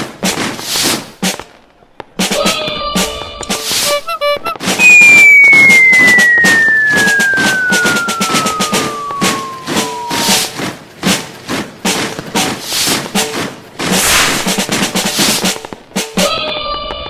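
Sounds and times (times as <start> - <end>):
crackle of rapid pops: 0.0 - 17.0
short squeaky toots: 3.6 - 6.7
descending whistle: 4.8 - 10.6.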